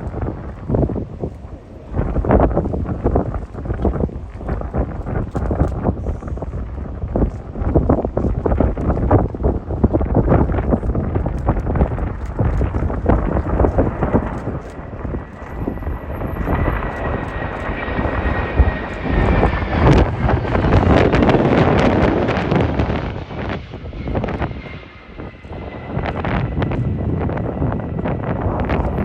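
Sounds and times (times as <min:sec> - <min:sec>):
jet engines passing overhead: 0:00.0 - 0:29.0
wind buffeting microphone: 0:00.0 - 0:29.0.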